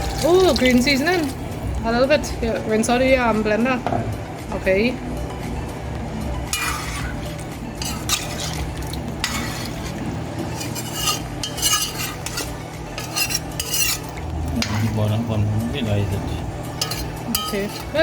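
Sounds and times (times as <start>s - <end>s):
spoon scraping a pot: 6.5s - 15.2s, 16.6s - 18.0s.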